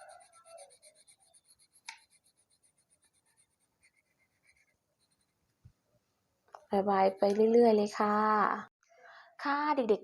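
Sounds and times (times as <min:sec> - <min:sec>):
pencil scratching on paper: 0:00.0 - 0:05.5, 0:06.8 - 0:07.7.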